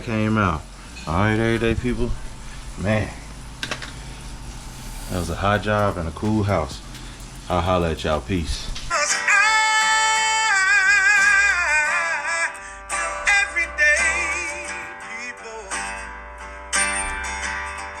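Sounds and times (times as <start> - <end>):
plucked guitar: 5.2 - 18.0
person singing with vibrato: 8.9 - 16.0.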